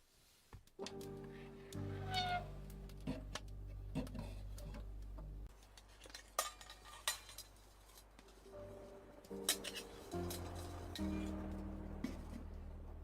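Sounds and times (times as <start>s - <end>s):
soft background music: 0.7s - 5.6s, 7.2s - 13.0s
metal cookware clinks and knocks: 6.0s - 7.6s, 9.4s - 11.5s.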